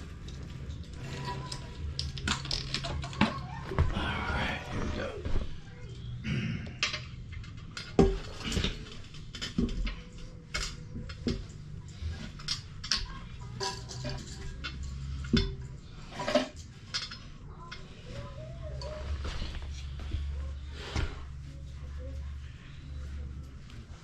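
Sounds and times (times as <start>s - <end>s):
hard parts clinking and knocking: 0.3s - 3.5s.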